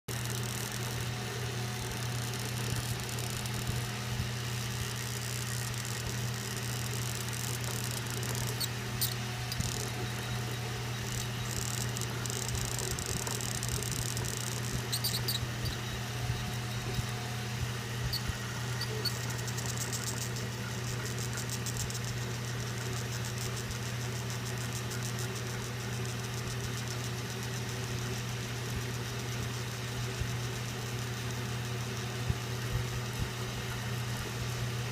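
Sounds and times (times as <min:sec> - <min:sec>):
machine humming: 0:00.1 - 0:34.9
high-pitched squeaks: 0:07.6 - 0:10.4, 0:11.1 - 0:17.1.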